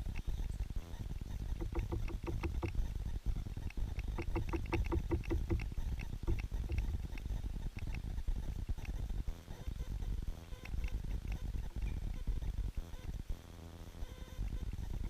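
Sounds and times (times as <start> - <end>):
bird calls: 0.2 - 2.9, 3.8 - 8.0.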